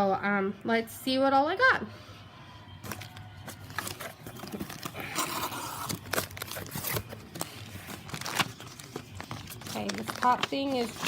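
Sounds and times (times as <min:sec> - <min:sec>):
paper packing crinkling and rustling: 0:02.8 - 0:11.0.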